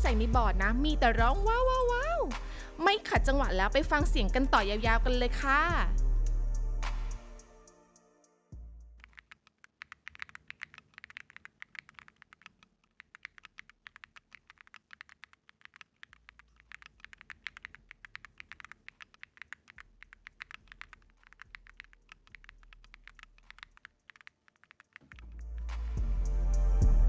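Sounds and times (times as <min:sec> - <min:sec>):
fast mechanical keyboard typing: 0:09.0 - 0:25.4.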